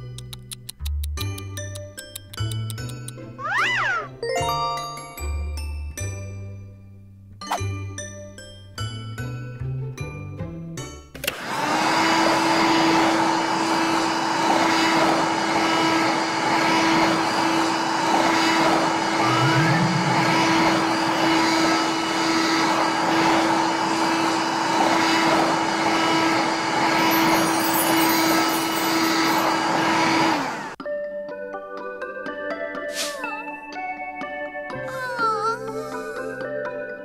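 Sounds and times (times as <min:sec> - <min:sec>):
toy vacuum cleaner motor hum: 0:11.2 - 0:30.8.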